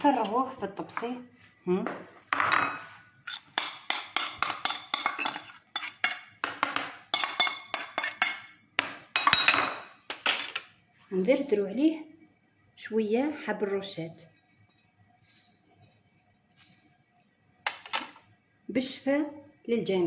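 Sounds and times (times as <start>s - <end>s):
utensil scraping frying pan: 3.3s - 6.2s, 14.2s - 17.1s.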